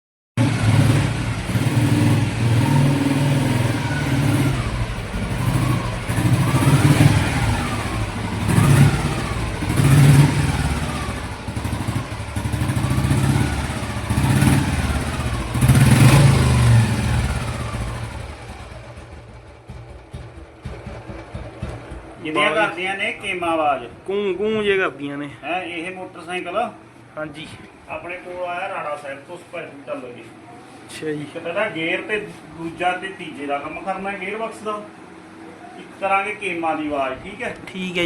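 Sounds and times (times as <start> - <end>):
motorcycle engine revving: 0.4 - 22.6.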